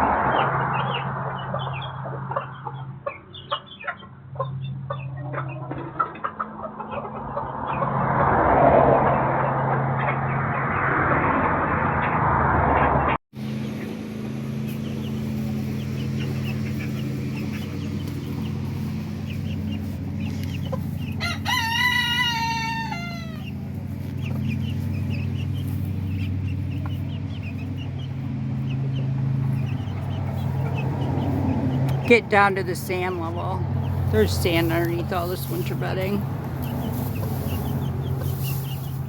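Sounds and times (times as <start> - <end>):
chicken clucking: 0.3 - 7.9, 14.7 - 39.0
steady low hum: 13.4 - 39.0
rooster crowing: 21.1 - 23.6.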